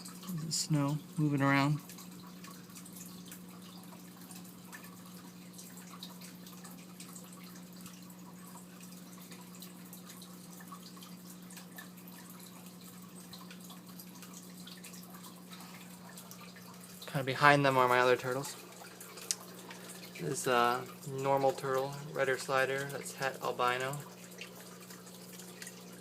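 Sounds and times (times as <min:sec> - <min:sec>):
tank filter humming: 0:00.0 - 0:26.0
water trickling and dripping: 0:00.0 - 0:26.0.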